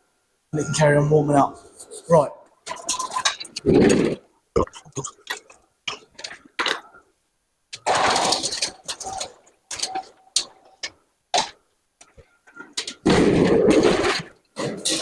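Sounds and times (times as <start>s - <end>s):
rolling scrape: 7.8s - 11.5s, 12.6s - 15.0s.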